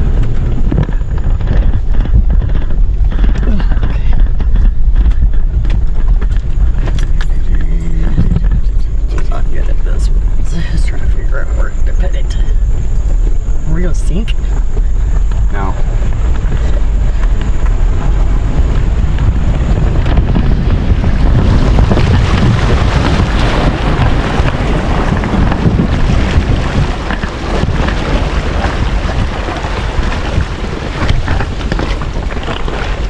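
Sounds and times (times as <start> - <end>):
truck engine low rumble: 0.0 - 33.0
water splashing and surging: 7.9 - 33.0.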